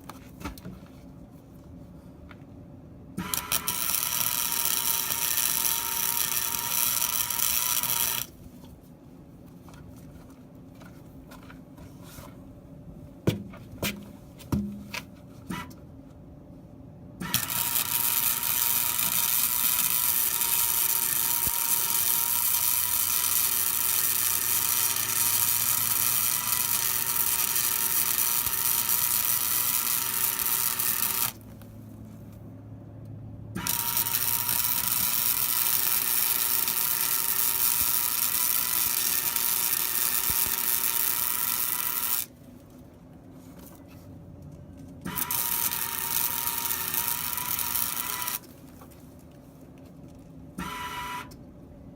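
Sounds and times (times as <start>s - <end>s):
welding arc crackling and buzzing: 3.2s - 8.4s, 17.3s - 31.4s, 33.6s - 42.3s, 45.1s - 48.4s.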